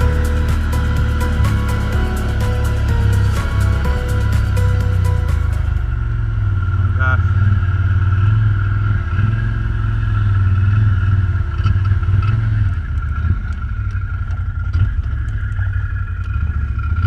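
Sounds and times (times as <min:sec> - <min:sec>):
high whine: 0:00.0 - 0:07.0
off-road vehicle engine running: 0:00.0 - 0:17.0.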